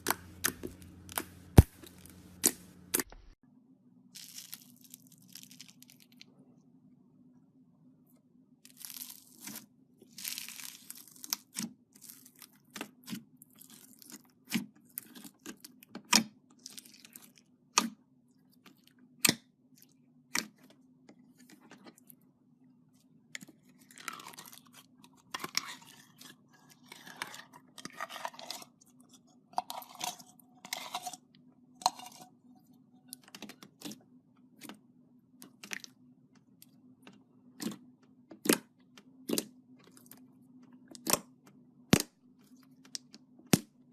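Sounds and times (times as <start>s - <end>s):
slime popping and crackling: 4.2s - 6.2s.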